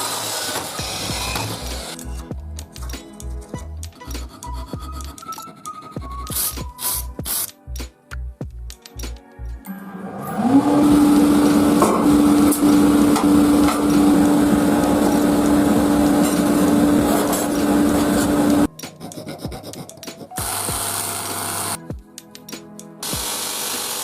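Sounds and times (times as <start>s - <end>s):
power tool motor running: 0.0s - 2.0s, 10.5s - 18.7s, 20.4s - 21.8s, 23.0s - 24.0s
workshop sounds: 0.0s - 7.9s, 10.4s - 24.0s.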